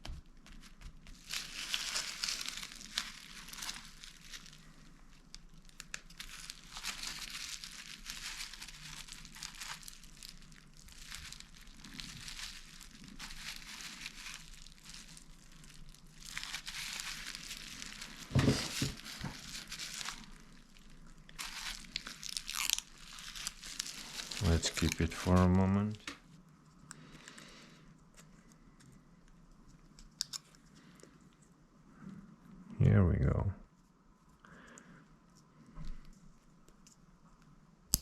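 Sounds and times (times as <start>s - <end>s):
plastic crinkling and rustling: 0.0s - 31.4s.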